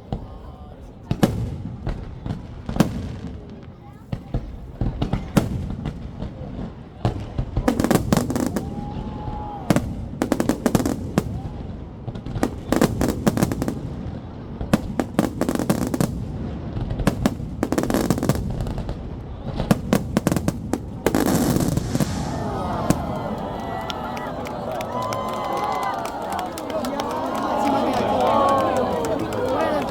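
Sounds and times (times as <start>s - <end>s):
fireworks bangs and crackles: 0.0s - 29.9s
low rumble of booms: 21.7s - 23.2s.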